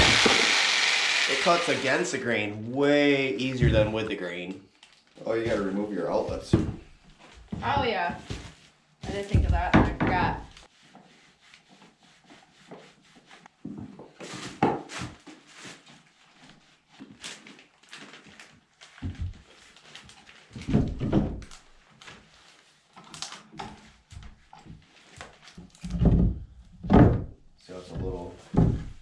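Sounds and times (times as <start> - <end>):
heavy thuds: 9.1 - 10.4
knocks and clicks of handling tools: 23.6 - 27.3.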